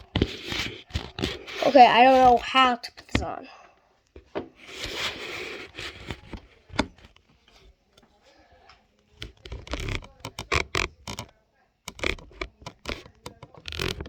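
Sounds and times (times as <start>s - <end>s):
plastic toy car clicking: 9.2s - 11.3s, 11.9s - 14.0s.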